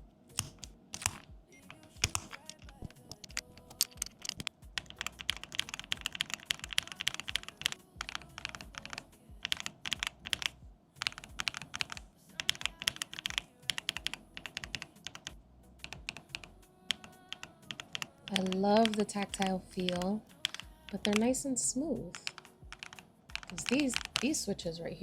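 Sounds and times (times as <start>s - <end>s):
mechanical keyboard typing: 0.4s - 24.5s.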